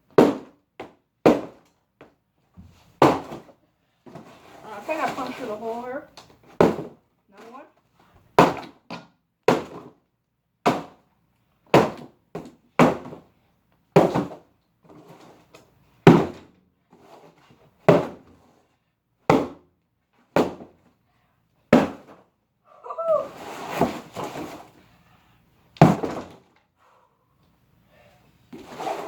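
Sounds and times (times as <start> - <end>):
hammer striking cardboard box: 0.1 - 1.7, 3.0 - 3.5, 6.6 - 7.0, 8.4 - 9.9, 10.6 - 11.0, 11.7 - 13.2, 14.0 - 14.4, 16.0 - 16.5, 17.9 - 18.3, 19.3 - 19.6, 20.4 - 20.8, 21.7 - 22.2, 25.8 - 26.4.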